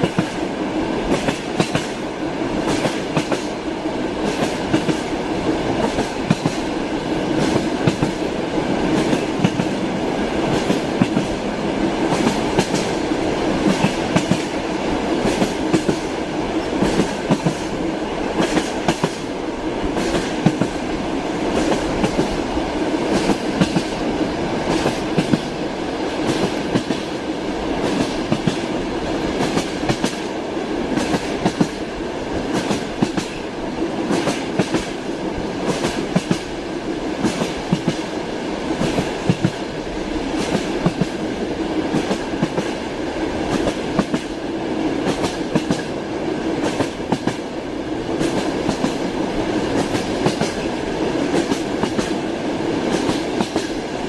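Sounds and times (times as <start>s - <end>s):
train wheels clattering: 1.1s - 2.0s, 2.6s - 3.5s, 4.2s - 9.8s, 12.0s - 16.1s, 16.7s - 19.3s, 19.9s - 20.8s, 23.0s - 24.0s, 24.7s - 25.6s, 26.2s - 27.2s, 27.8s - 30.3s, 32.5s - 33.5s, 34.1s - 35.0s, 35.6s - 36.5s, 45.0s - 46.0s, 46.6s - 47.5s, 48.2s - 53.8s.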